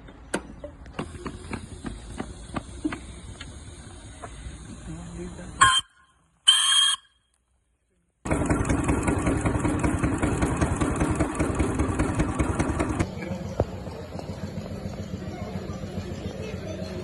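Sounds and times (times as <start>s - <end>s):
small engine running fast: 8.2s - 17.0s.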